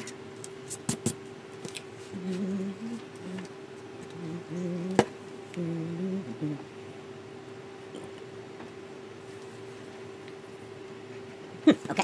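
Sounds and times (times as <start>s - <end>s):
man humming a tune: 2.1s - 3.5s, 4.1s - 6.7s.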